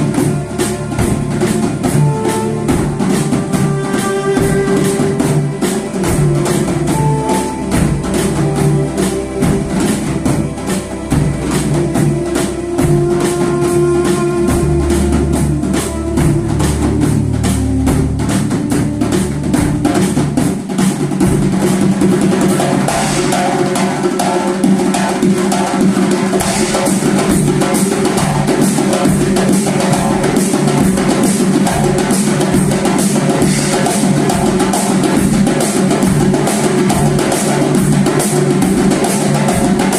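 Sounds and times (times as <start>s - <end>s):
melodic accompaniment: 0.0s - 25.2s
drum ensemble playing fast rhythm: 0.0s - 39.9s.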